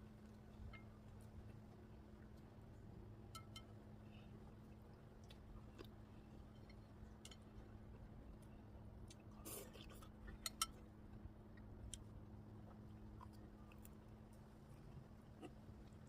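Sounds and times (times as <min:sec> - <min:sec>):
low steady hum: 0:00.0 - 0:16.0
faint chewing: 0:04.5 - 0:16.0.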